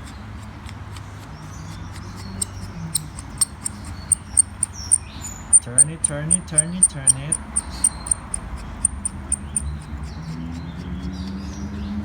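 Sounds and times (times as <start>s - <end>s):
small sharp mechanism clicks: 2.4s - 5.0s, 5.6s - 9.7s.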